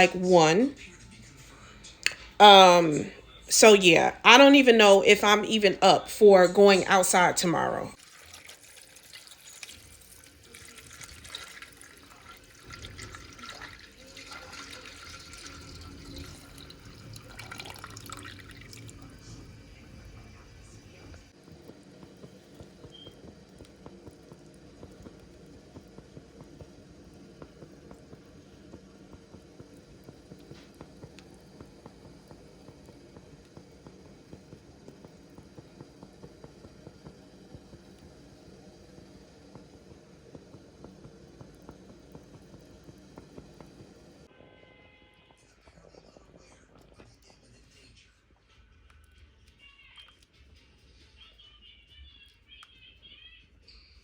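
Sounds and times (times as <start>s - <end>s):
low steady hum: 0.0s - 8.0s, 9.5s - 50.5s
tap water running into sink: 8.0s - 20.1s.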